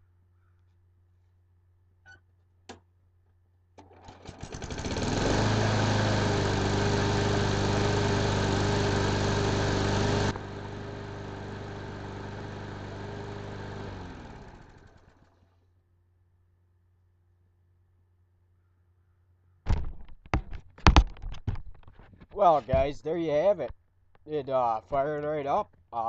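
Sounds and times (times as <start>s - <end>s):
lawn mower engine running: 3.8s - 15.6s.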